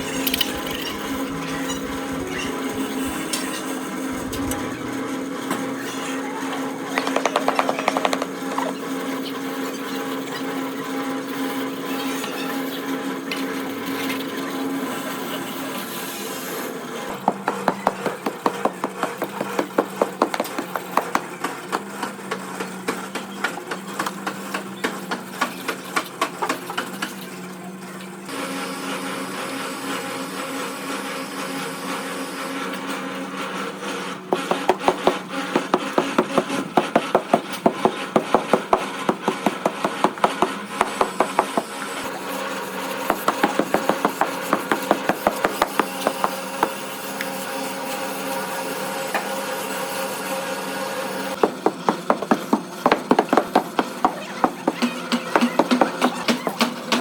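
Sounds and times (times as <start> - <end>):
steady hum: 0.0 - 5.8
hand tool tapping and scraping: 7.0 - 8.8, 17.2 - 21.9, 34.4 - 42.2, 43.0 - 47.3.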